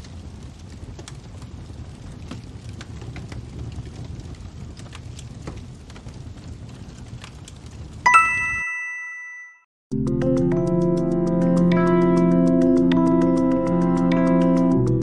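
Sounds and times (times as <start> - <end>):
fireplace crackling and popping: 0.0 - 8.1
bright chime ringing: 8.1 - 9.7.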